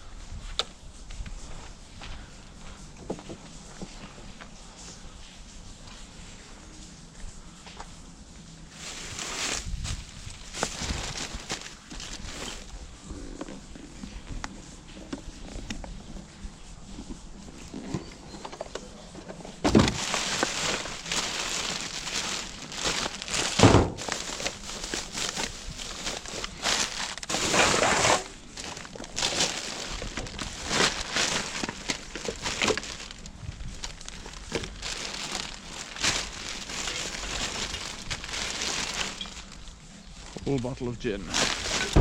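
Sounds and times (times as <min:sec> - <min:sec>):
plastic and paper rustling: 0:08.7 - 0:12.8, 0:17.6 - 0:42.0.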